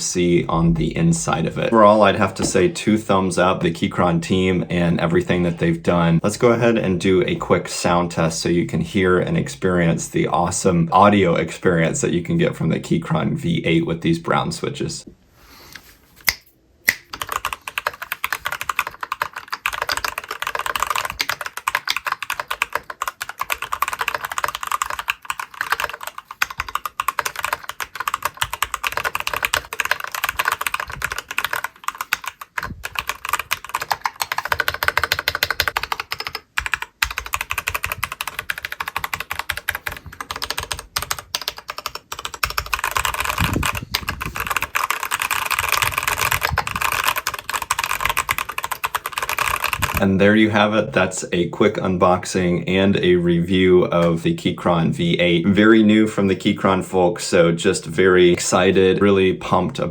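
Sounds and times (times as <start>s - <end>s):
mechanical keyboard clacking: 16.9s - 50.0s.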